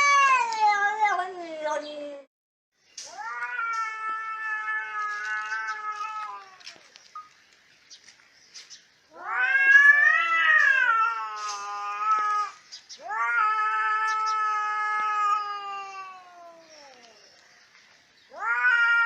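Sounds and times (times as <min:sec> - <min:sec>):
cats yowling: 0:03.1 - 0:06.9, 0:09.1 - 0:17.4, 0:18.3 - 0:19.0.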